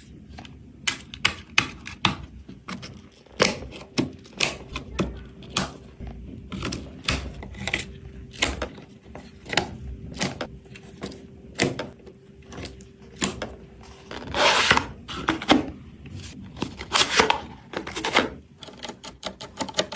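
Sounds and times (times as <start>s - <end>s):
scraping rustles: 13.8s - 18.4s.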